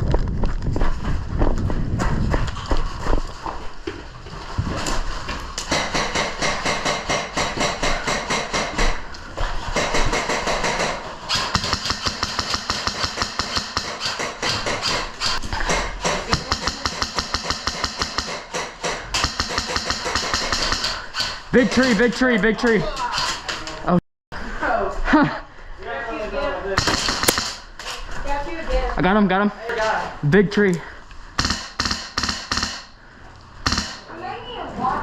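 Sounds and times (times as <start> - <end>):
airsoft guns firing: 5.6 - 9.0, 9.7 - 22.1, 26.8 - 27.7, 31.4 - 33.0, 33.6 - 34.1.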